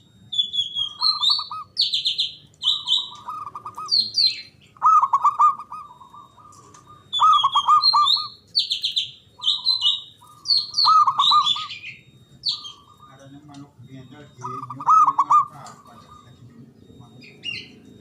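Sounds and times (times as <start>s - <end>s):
dove cooing: 0.0s - 18.0s
bird short high chirps: 0.4s - 13.2s.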